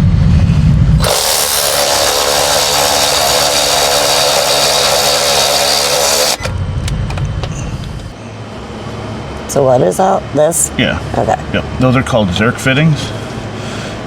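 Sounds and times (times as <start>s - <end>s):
cordless power tool running: 1.0s - 6.5s.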